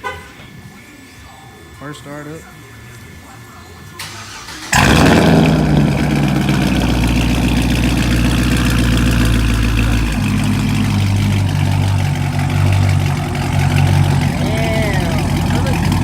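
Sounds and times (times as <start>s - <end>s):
car engine idling loudly: 4.2s - 16.0s.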